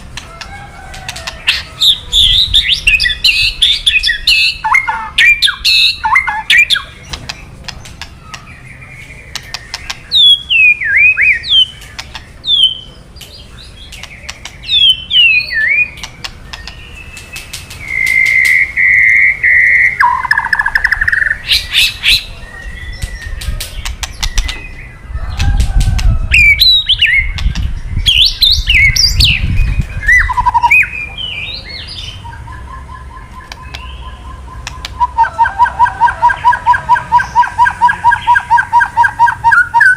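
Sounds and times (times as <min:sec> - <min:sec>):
bird whistling calls: 0:14.5 - 0:24.9, 0:28.1 - 0:39.9.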